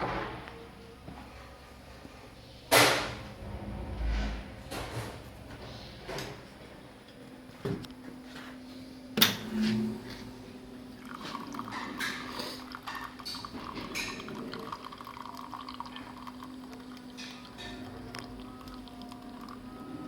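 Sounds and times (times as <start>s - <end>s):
coffee machine hum: 0.0s - 20.0s
coffee pouring and dripping: 10.9s - 20.0s.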